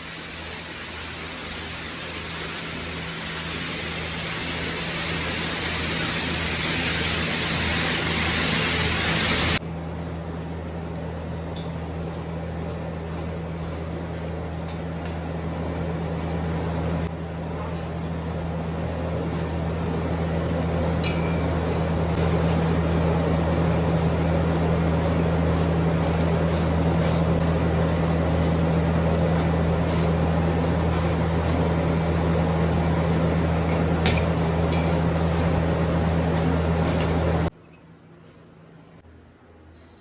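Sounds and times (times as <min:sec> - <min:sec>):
dairy machinery hum: 0:00.0 - 0:10.8.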